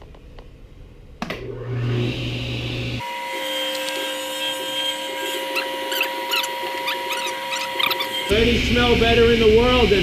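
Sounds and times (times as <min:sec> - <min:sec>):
power tool cutting wood: 0:01.5 - 0:10.0
short high squeaks: 0:05.4 - 0:08.3.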